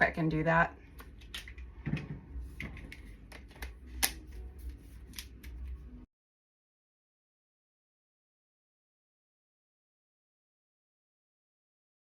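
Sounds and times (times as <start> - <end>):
low steady hum: 0.0 - 6.1.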